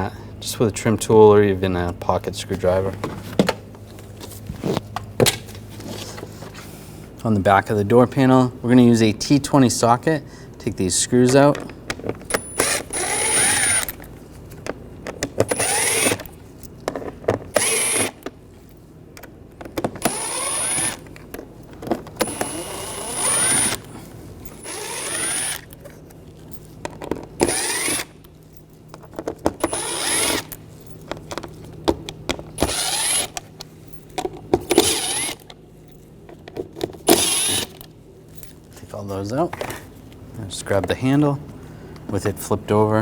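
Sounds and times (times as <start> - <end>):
ratchet clicking: 12.3 - 14.0, 20.0 - 21.0, 22.2 - 23.9, 24.5 - 25.8, 27.4 - 28.2, 32.6 - 33.4, 34.7 - 35.5, 37.1 - 37.9.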